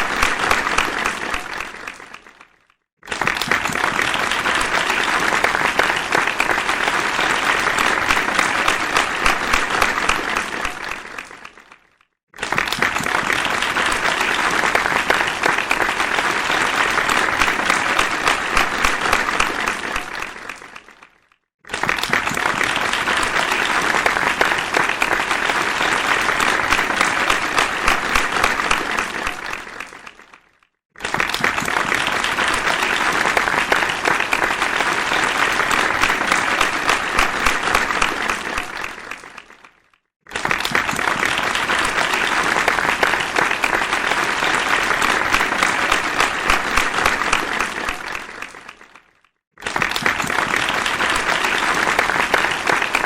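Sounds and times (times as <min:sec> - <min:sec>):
crowd applause: 0:00.0 - 0:53.0.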